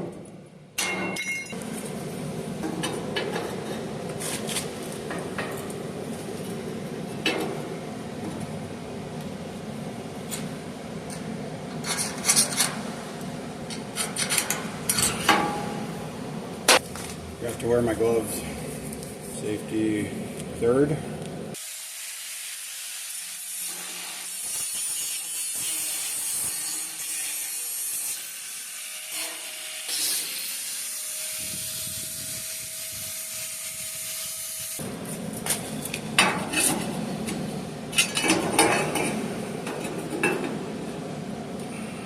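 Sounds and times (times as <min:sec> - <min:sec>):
saw cutting metal: 0:21.6 - 0:34.8.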